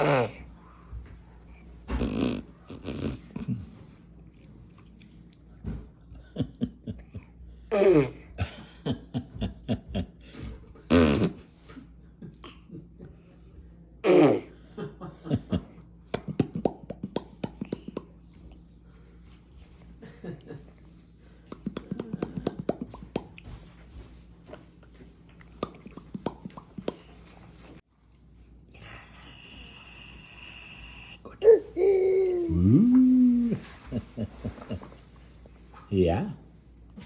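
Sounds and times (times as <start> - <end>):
baby sputtering and smacking: 25.4 - 27.2
baby squealing: 31.4 - 32.7.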